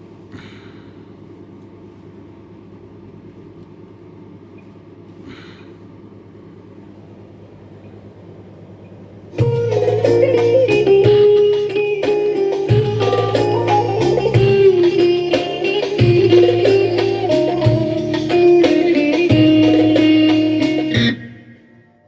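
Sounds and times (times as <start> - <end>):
amplifier hum: 0.0 - 22.0
loud music: 9.4 - 22.0.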